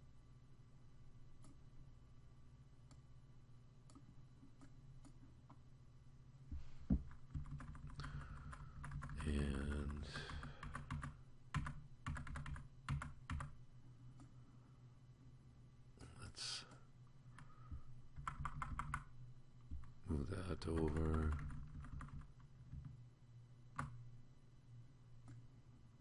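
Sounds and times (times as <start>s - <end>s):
keyboard typing: 7.0s - 13.6s, 18.1s - 19.1s, 20.6s - 23.0s.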